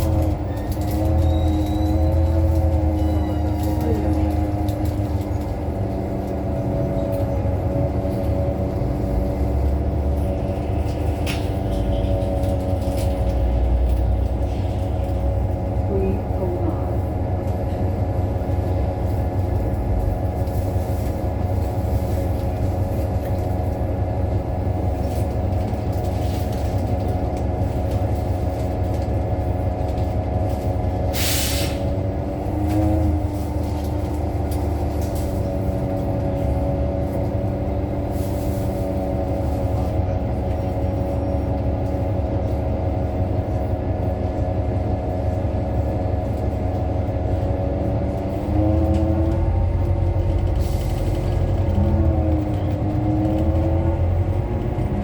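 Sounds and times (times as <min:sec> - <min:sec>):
bus drivetrain hum: 0:00.0 - 0:55.0
brief air hiss: 0:31.2 - 0:31.8.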